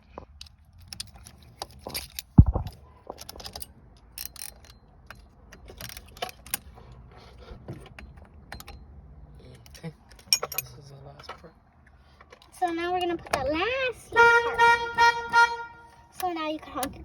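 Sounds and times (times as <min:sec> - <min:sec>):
small metal parts clicking and rattling: 0:00.0 - 0:06.8, 0:09.5 - 0:11.5
loud low thump: 0:02.4 - 0:02.7.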